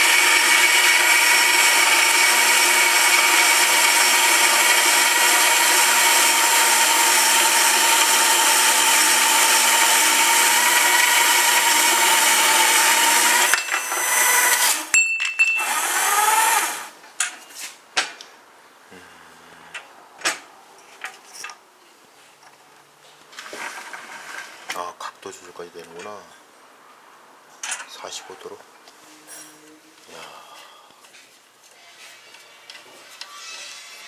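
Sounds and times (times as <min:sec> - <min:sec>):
band saw whining: 0:00.0 - 0:14.9, 0:15.6 - 0:16.9.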